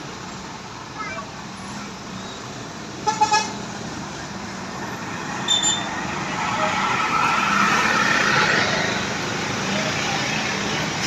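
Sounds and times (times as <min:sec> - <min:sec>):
traffic engine hum: 0:00.0 - 0:11.0
vehicle approaching: 0:03.6 - 0:11.0.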